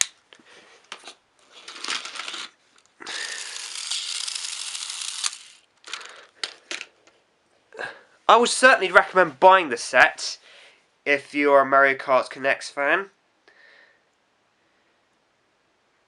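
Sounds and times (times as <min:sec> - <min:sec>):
toy kart rattling whirr: 0:03.1 - 0:06.1.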